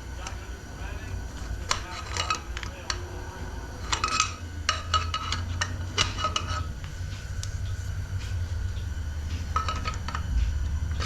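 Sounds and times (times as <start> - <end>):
metal parts clicking and clinking: 1.3 - 6.9, 9.4 - 11.0.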